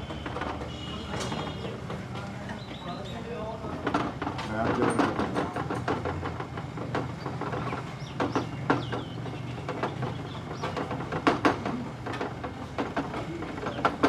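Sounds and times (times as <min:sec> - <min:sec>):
bird chirps: 0:02.5 - 0:03.3, 0:08.0 - 0:10.8.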